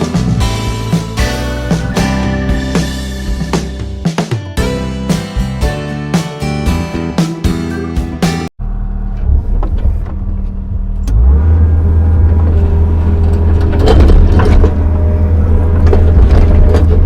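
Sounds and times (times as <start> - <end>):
excavator diesel engine running: 0.0 - 4.8, 8.6 - 17.0
clanks and scrapes of digging: 12.4 - 14.9, 15.6 - 17.0.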